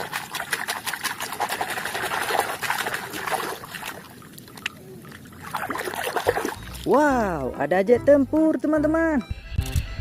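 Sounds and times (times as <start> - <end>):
water trickling and splashing: 0.0 - 7.5.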